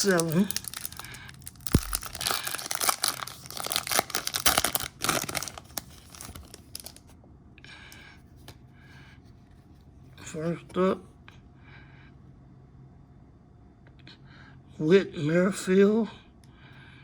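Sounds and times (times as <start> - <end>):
foil wrapper tearing and crinkling: 0.0 - 7.1.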